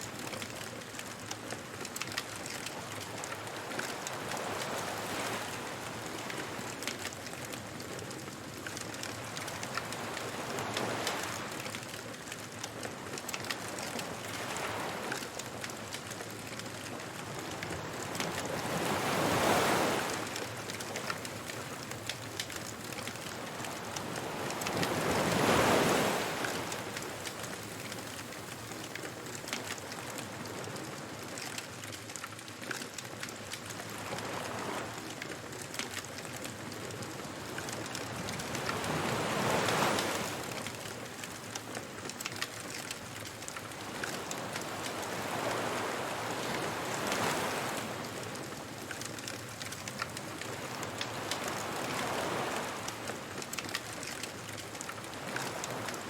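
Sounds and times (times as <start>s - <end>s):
burning wood crackling: 0.1s - 56.0s
surf washing in: 17.2s - 28.8s, 37.3s - 40.8s, 43.5s - 48.8s, 49.8s - 53.5s.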